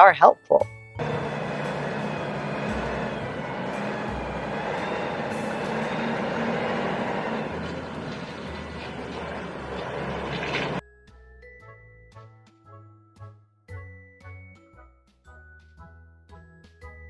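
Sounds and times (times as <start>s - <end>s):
truck engine rumbling: 1.0s - 10.8s.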